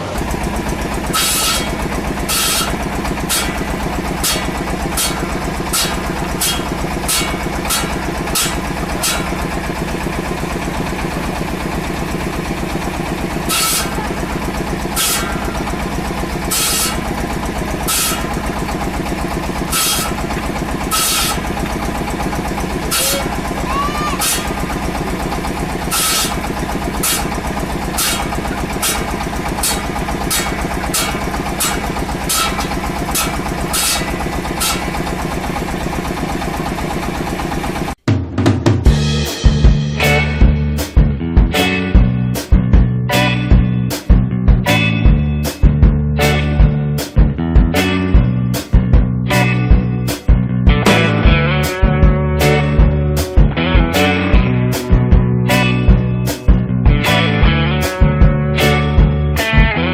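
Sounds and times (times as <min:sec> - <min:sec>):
machine engine running: 0:00.0 - 0:38.2, 0:38.8 - 0:59.7
sharp high-pitched noises: 0:22.9 - 0:24.7.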